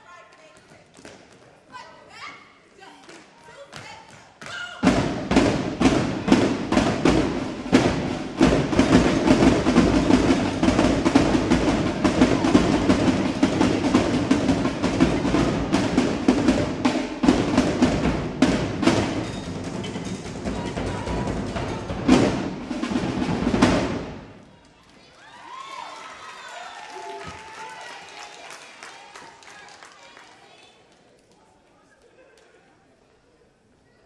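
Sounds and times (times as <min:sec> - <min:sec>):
fast drum line drumming: 0:04.8 - 0:24.4.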